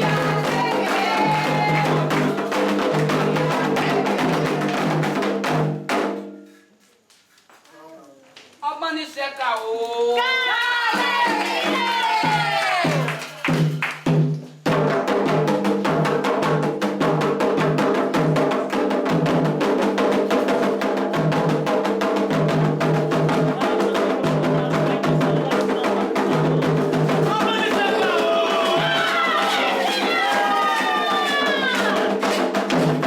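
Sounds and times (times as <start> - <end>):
sung chanting: 0.0 - 4.9, 23.6 - 32.2
hand drums and struck percussion: 0.0 - 6.6, 10.8 - 33.0.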